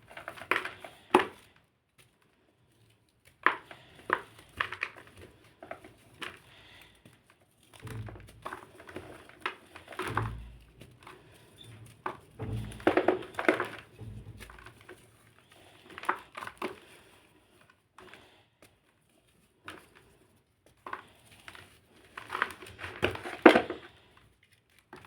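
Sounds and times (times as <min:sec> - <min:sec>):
heavy dull thuds: 0:07.8 - 0:08.6, 0:10.1 - 0:11.0, 0:11.6 - 0:14.9
blocks crunching and crumbling: 0:07.8 - 0:17.1, 0:22.0 - 0:24.1.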